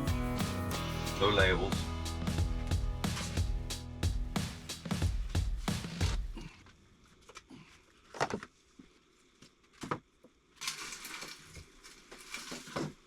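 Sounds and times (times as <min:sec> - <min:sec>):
soft rustle: 0:10.4 - 0:13.0.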